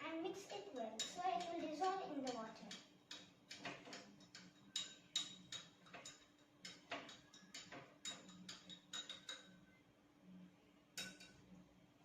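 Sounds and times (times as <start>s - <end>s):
spoon tapping a glass: 2.7s - 9.6s, 11.0s - 11.4s.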